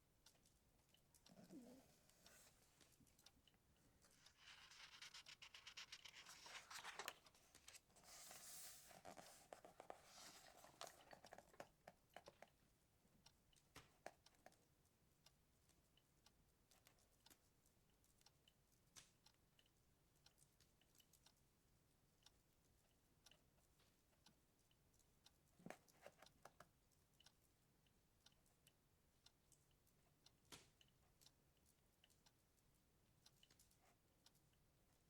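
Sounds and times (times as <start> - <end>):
faint ticks: 0.2 - 12.6, 22.2 - 34.7
paper rustling: 4.0 - 11.4.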